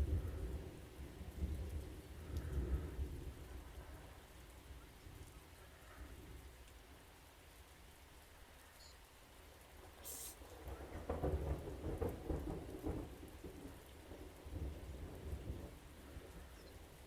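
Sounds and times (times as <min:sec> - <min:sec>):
thunder rumbling: 0:00.0 - 0:04.8, 0:10.5 - 0:17.0
steady rain: 0:00.0 - 0:17.0.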